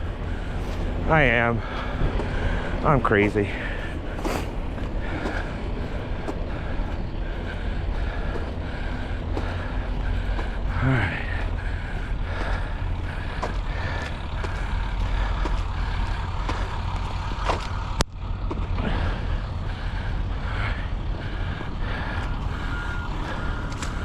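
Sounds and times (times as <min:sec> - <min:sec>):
low steady rumble: 0:00.0 - 0:24.0
reversing alarm beeping: 0:20.7 - 0:24.0.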